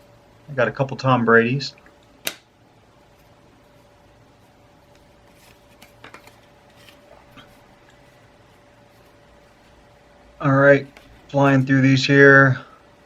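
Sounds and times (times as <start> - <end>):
trading cards sliding: 4.8 - 9.8.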